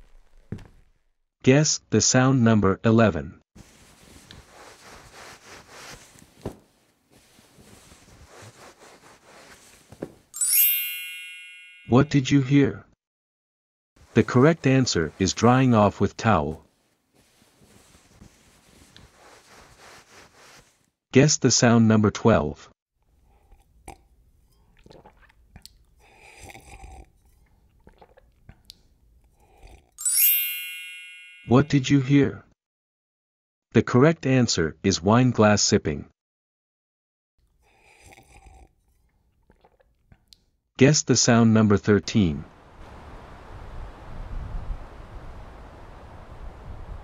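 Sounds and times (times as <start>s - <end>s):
towel rubbing over skin: 3.6s - 10.3s, 14.0s - 20.9s
sipping from a glass: 23.2s - 30.0s, 37.6s - 40.4s
faint mouth clicks: 23.3s - 24.1s, 24.8s - 30.0s.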